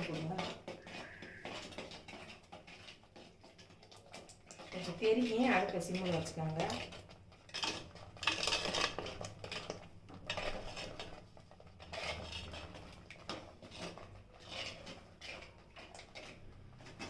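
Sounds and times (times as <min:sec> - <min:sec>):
metal spoon scraping a pot: 0:00.0 - 0:17.0.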